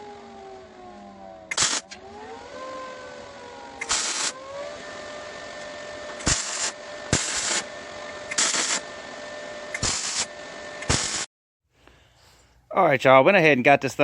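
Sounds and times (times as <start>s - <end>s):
steady whine: 0.0s - 11.3s
welder arc striking click: 1.5s - 2.0s, 3.8s - 4.4s, 5.6s - 7.7s, 8.3s - 8.8s, 9.7s - 11.3s
welder crackling bursts: 1.5s - 2.0s, 3.8s - 4.4s, 5.5s - 8.9s, 9.7s - 11.3s.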